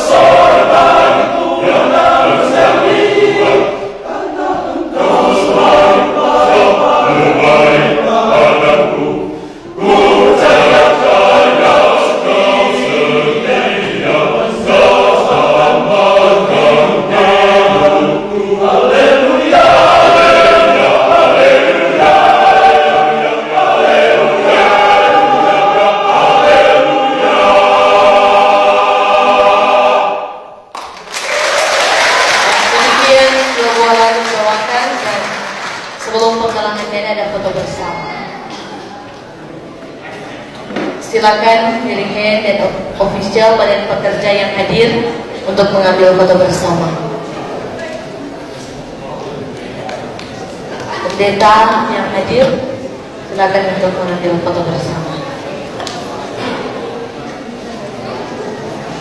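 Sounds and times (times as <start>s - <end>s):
men's choir singing a hymn: 0.0s - 30.6s.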